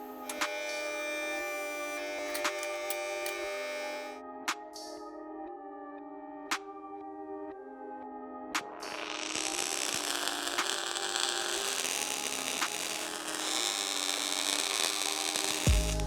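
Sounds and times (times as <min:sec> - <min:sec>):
sharp clicks: 0:00.3 - 0:04.1, 0:08.6 - 0:16.0.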